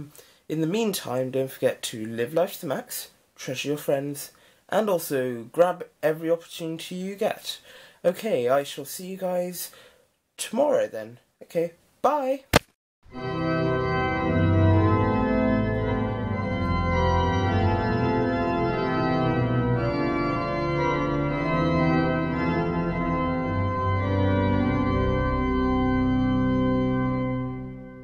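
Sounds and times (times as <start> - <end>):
organ chords: 13.1 - 28.0.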